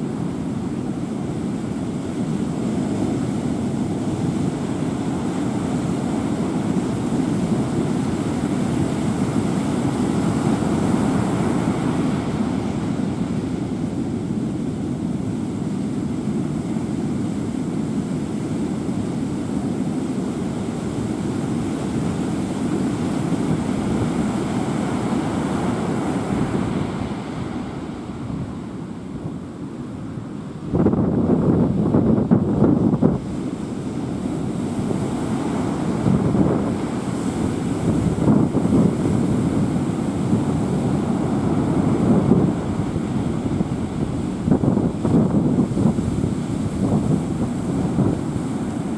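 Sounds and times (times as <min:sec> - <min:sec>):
wind buffeting microphone: 0:00.0 - 0:48.9
strong wind rushing: 0:20.8 - 0:48.9.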